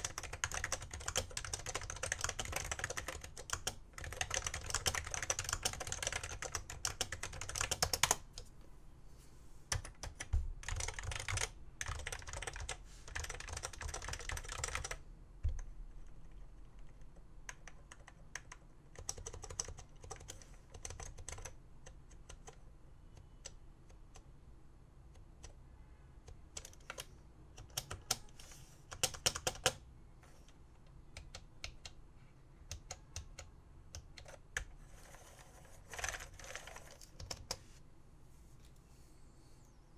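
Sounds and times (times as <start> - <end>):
keyboard typing: 0.0 - 8.5, 9.7 - 22.6, 26.3 - 29.8, 32.6 - 37.6.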